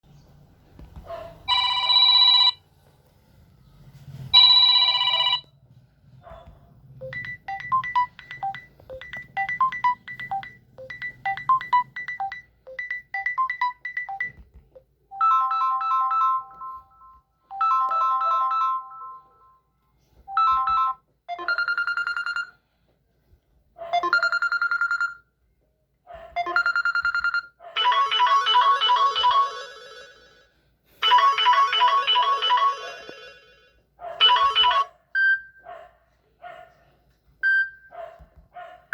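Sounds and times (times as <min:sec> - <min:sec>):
electronic ringtone melodies: 0:07.0 - 0:14.4, 0:15.1 - 0:19.5, 0:20.3 - 0:22.6, 0:24.0 - 0:25.2, 0:26.4 - 0:30.4, 0:31.0 - 0:35.5.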